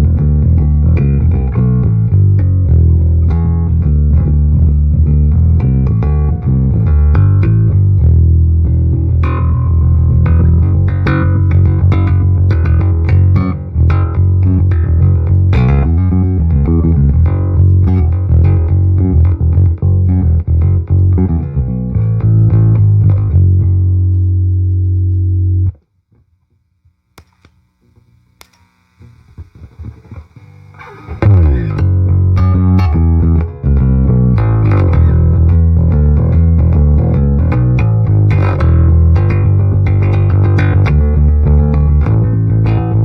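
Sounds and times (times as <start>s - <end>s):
electric bass riff: 0.0s - 25.8s, 29.0s - 43.0s
low hum: 27.8s - 37.1s.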